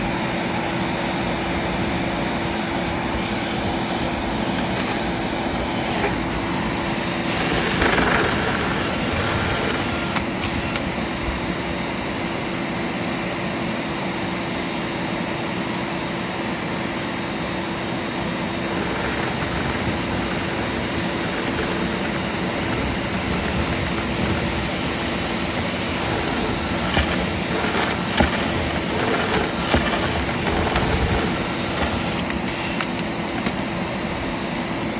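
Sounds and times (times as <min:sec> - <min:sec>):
cleaning machine motor running: 0:00.0 - 0:34.9
air rushing through duct: 0:17.8 - 0:34.6.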